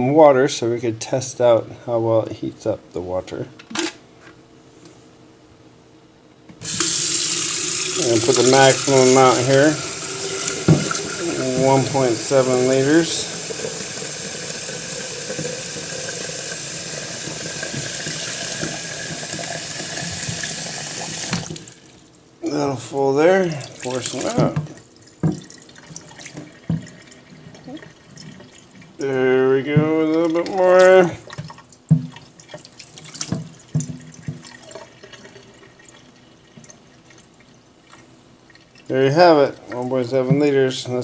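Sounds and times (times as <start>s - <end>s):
tap water running into kettle: 6.5s - 22.0s, 23.6s - 29.1s, 29.8s - 41.0s
kettle clinking and knocking: 10.2s - 19.5s.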